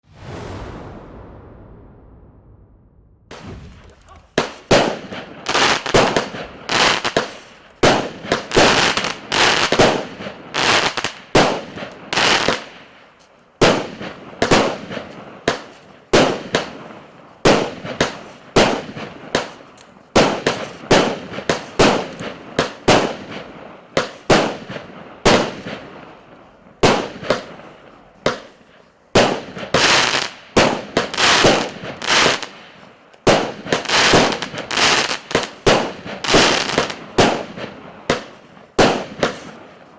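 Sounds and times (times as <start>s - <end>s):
fireworks shots and bursts: 0.0s - 39.9s
firework crackling: 3.3s - 25.9s, 26.5s - 39.9s.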